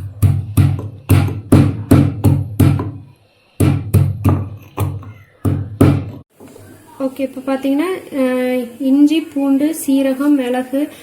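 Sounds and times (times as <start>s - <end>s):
stone pounding on grinding stone: 0.0s - 6.2s.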